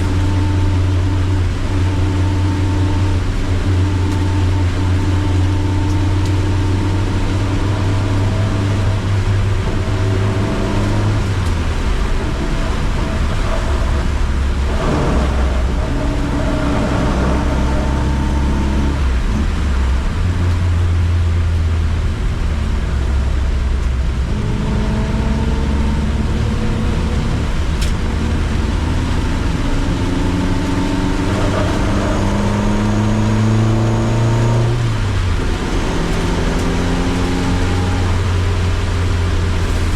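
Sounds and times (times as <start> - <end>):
car engine accelerating: 0.0 - 39.9
rain and wet road hiss: 0.0 - 39.9.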